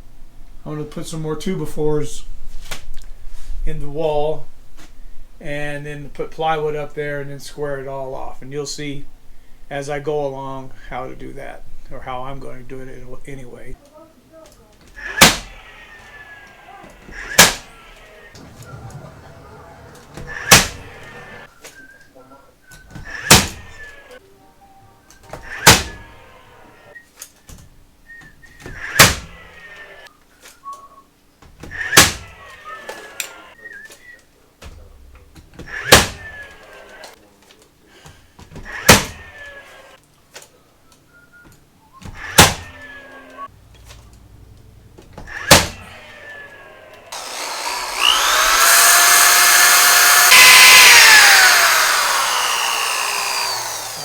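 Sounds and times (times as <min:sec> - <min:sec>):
nails hammered into wood: 0:15.2 - 0:15.5, 0:17.4 - 0:17.7, 0:20.5 - 0:20.9, 0:32.0 - 0:32.2, 0:35.9 - 0:36.2
power tool motor whine: 0:18.4 - 0:21.5, 0:47.1 - 0:54.0
knocks of handling lumber: 0:47.2 - 0:54.0.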